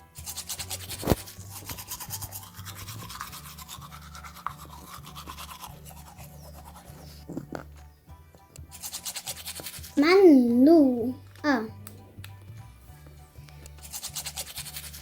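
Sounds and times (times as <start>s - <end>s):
toothbrush scrubbing: 0.0s - 7.7s, 8.7s - 10.0s, 13.7s - 15.0s.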